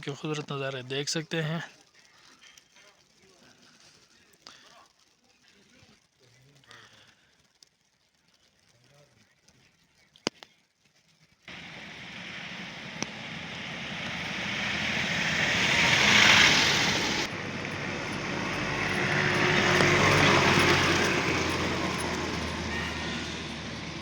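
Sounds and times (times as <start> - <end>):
vehicles driving past on snow: 11.5 - 24.0.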